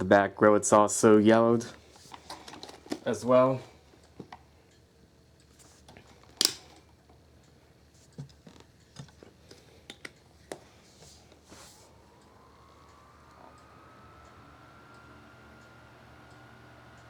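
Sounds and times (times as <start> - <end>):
plastic fan parts clicking: 2.0 - 3.2, 5.4 - 17.0
faint rising whine: 10.2 - 17.0.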